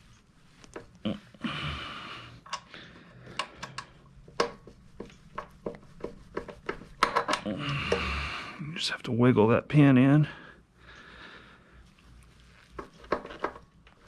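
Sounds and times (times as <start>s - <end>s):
small metallic clicks and taps: 3.3s - 5.8s.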